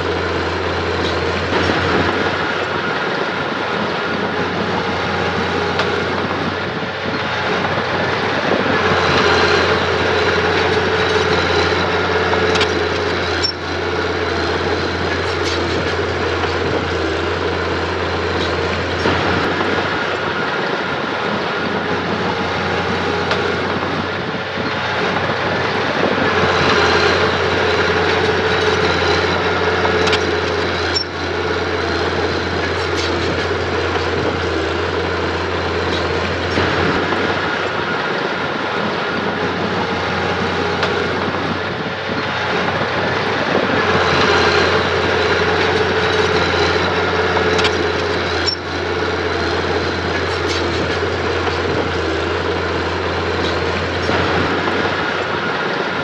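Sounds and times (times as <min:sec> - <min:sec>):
diesel engine under load: 0:00.0 - 0:56.0.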